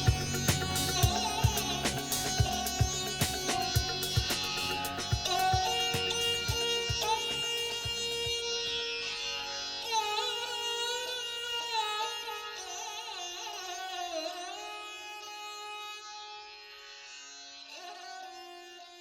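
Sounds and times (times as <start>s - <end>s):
low beats: 0.0s - 8.6s
string melody with sliding notes: 0.0s - 19.0s.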